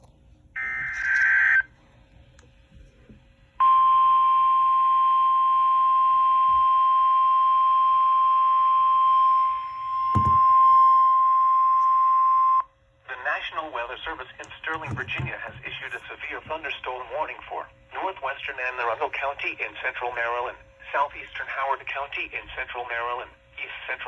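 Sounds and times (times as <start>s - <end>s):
steady alarm tone: 3.6s - 13.1s
low thump: 10.2s - 10.5s
radio hiss: 13.1s - 24.0s.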